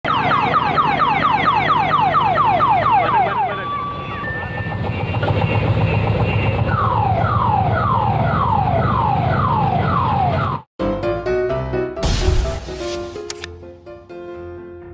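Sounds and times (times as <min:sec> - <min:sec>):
electronic multi-tone siren: 0:00.0 - 0:10.7.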